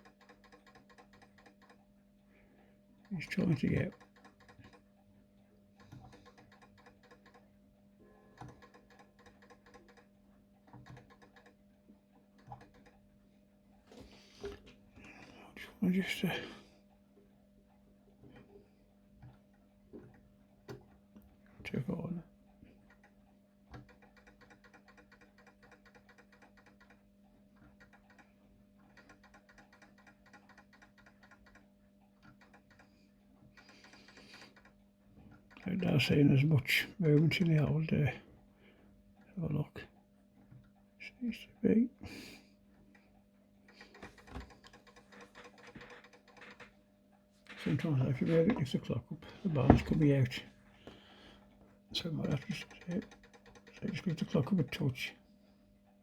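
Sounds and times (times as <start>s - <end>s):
clock ticking: 0.0s - 1.9s, 3.0s - 5.1s, 5.7s - 7.6s, 8.2s - 13.8s, 21.7s - 38.2s, 39.2s - 46.8s, 47.4s - 51.0s, 51.9s - 55.2s
steady low hum: 1.2s - 25.7s.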